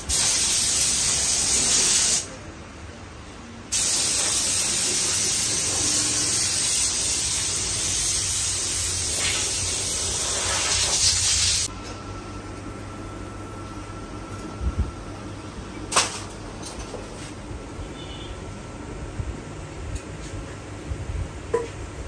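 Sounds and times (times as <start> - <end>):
pressurised jet hissing: 3.7 - 11.7.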